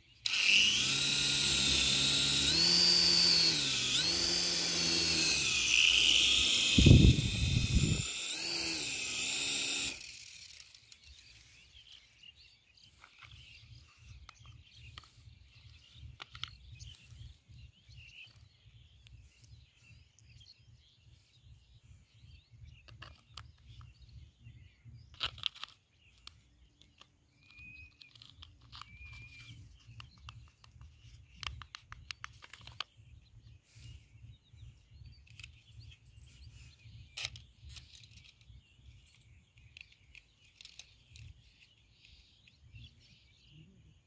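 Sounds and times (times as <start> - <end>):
small electric motor whining: 0.1 - 12.0.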